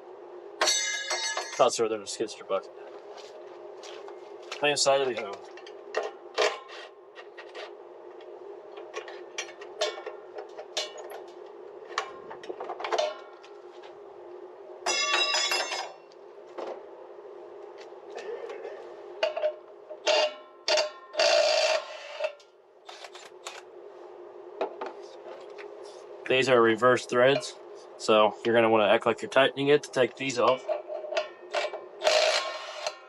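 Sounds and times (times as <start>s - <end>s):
steady low hum: 0.0s - 33.0s
tools clinking on metal parts: 0.6s - 1.7s, 14.8s - 16.0s.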